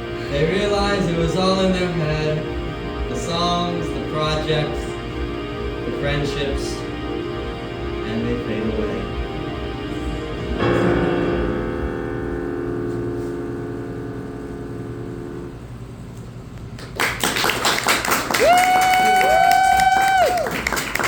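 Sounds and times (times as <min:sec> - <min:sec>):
held chord ringing: 0:00.0 - 0:16.8
audience applause: 0:16.8 - 0:21.0
people cheering woo: 0:18.0 - 0:21.0.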